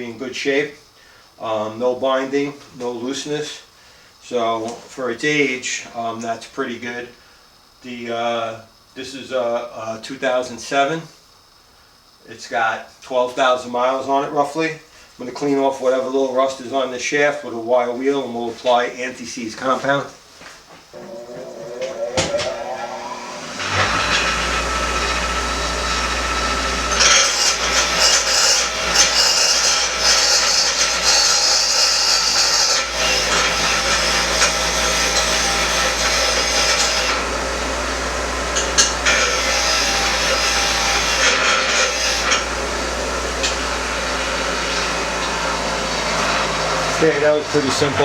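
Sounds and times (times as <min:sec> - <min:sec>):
wire wheel motor hum: 0:21.0 - 0:30.1, 0:35.4 - 0:48.0
wire wheel scratching metal: 0:26.8 - 0:33.4, 0:38.6 - 0:40.4.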